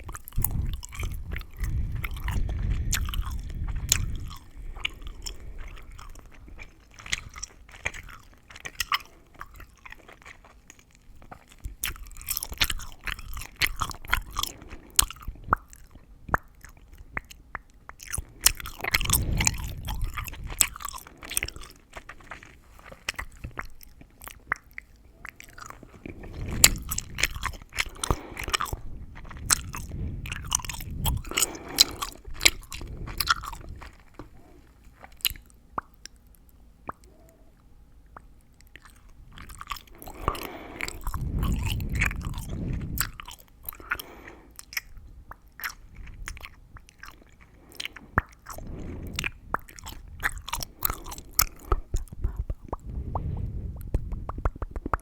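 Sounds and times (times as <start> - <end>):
gum chewing mouth sounds: 0.0 - 55.0.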